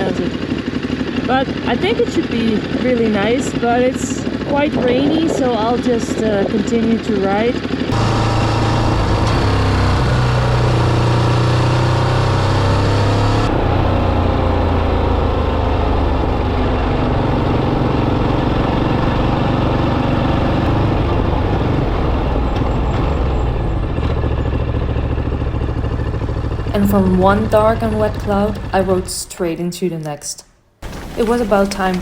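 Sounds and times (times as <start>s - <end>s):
motorcycle engine revving: 0.0s - 29.3s
wind and road noise: 7.6s - 28.4s.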